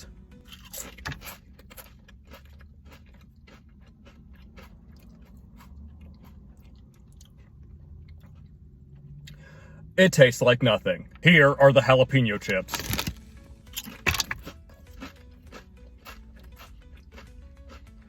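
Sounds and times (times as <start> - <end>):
crunching potato chips: 0.0 - 8.6, 12.4 - 18.0.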